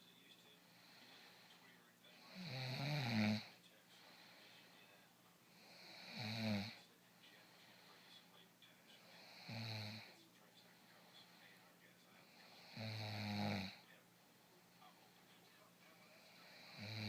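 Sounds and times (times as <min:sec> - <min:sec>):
soft breathing: 0:00.0 - 0:17.0
person snoring: 0:02.2 - 0:04.5, 0:05.5 - 0:06.8, 0:09.0 - 0:10.2, 0:12.2 - 0:13.9, 0:16.0 - 0:17.0.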